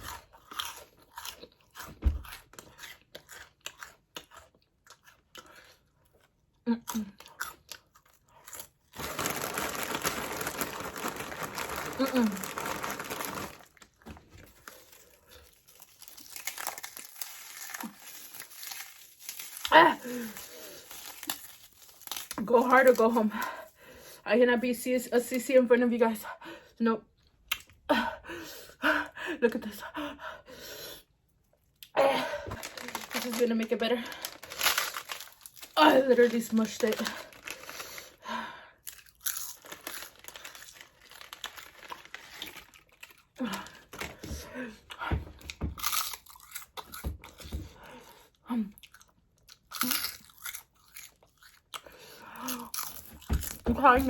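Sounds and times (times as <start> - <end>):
chips crunching: 6.9 - 23.2, 32.4 - 38.2, 38.8 - 44.4, 45.4 - 47.6, 48.8 - 54.0
crinkling and rustling: 8.9 - 23.2, 32.3 - 38.1, 39.6 - 47.8, 52.7 - 54.0.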